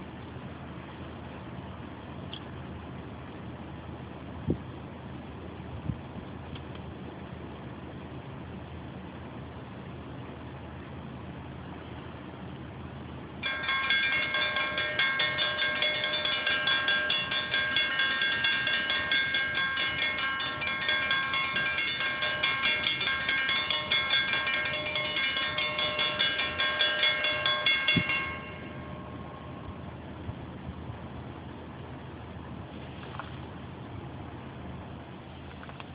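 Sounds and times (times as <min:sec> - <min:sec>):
low rumble: 0:13.4 - 0:35.0.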